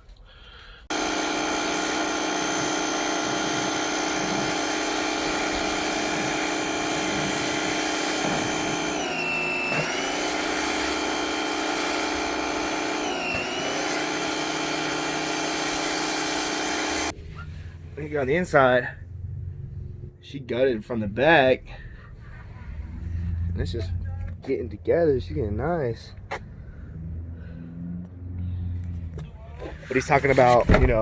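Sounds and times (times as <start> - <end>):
electric motor whining: 0.9 - 17.2.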